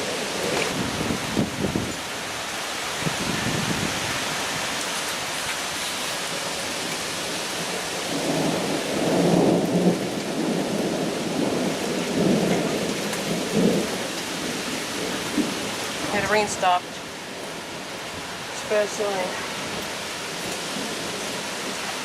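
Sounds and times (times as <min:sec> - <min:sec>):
thunder rumbling: 0:00.0 - 0:02.1, 0:07.5 - 0:22.0
heavy rain falling: 0:00.0 - 0:22.0.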